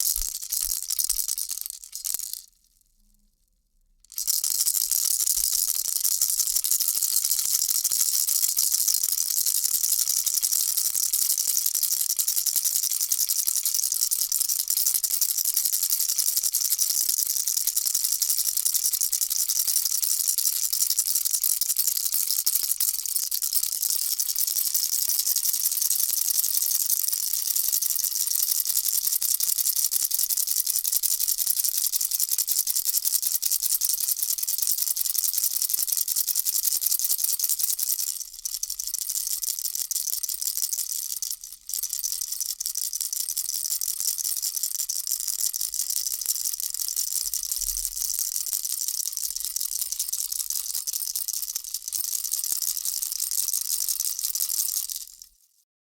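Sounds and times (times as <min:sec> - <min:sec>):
baby rattle shaking: 0:00.0 - 0:02.5, 0:04.1 - 0:55.5.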